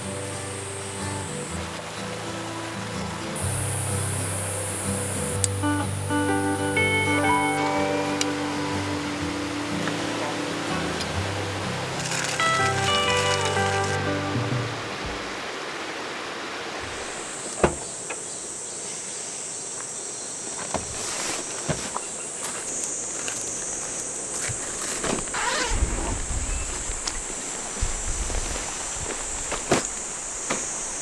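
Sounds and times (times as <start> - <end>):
stream water rushing: 0.0 - 18.2
high insect drone: 0.0 - 31.0.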